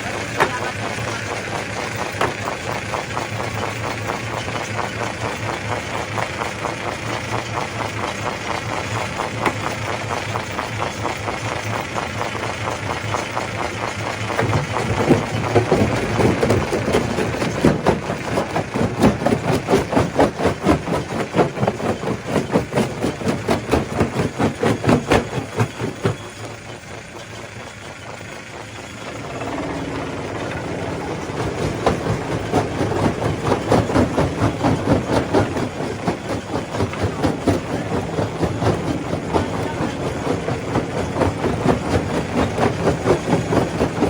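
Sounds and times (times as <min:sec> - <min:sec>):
stone crusher machine running: 0:00.0 - 0:44.0
rock crushing knocks and clatter: 0:14.3 - 0:26.3.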